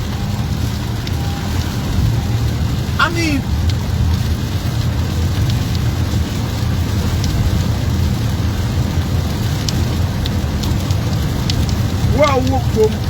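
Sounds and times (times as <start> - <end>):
steady rain: 0.0 - 13.0
drops ticking on a surface: 9.4 - 13.0.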